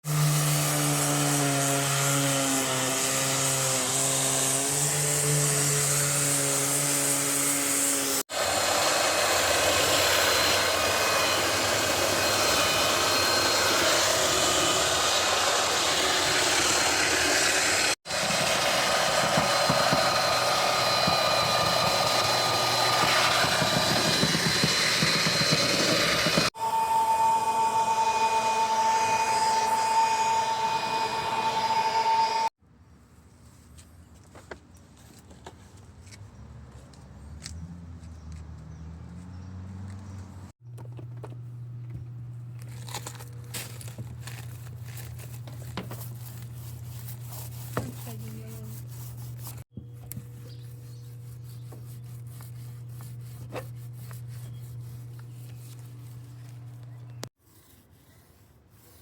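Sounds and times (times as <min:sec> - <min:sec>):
high-pitched power tool whine: 0:00.0 - 0:32.6.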